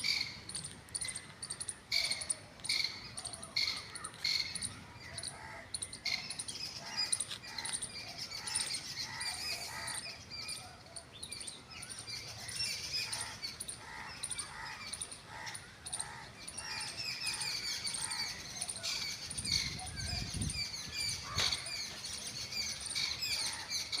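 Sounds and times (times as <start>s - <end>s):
birds chirping: 0.0s - 24.0s.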